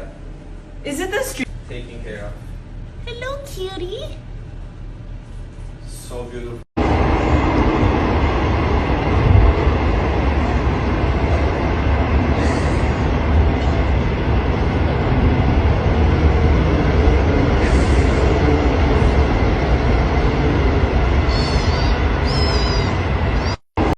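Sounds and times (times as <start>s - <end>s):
steady loud rumble: 1.5s - 23.9s
cat meowing: 21.3s - 23.6s.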